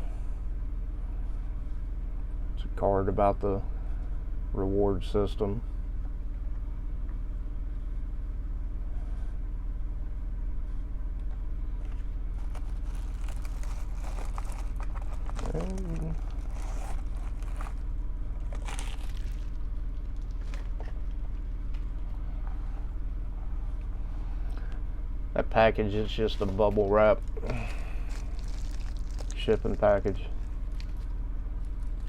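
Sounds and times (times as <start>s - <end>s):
steady low hum: 0.0s - 32.0s
bubble wrap crinkling: 11.9s - 22.0s, 26.2s - 32.0s
packaging scraping: 12.3s - 20.8s, 26.3s - 32.0s.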